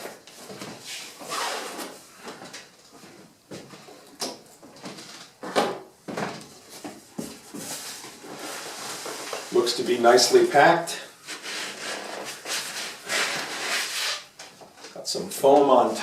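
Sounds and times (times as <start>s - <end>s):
cardboard rustling: 6.4s - 10.3s.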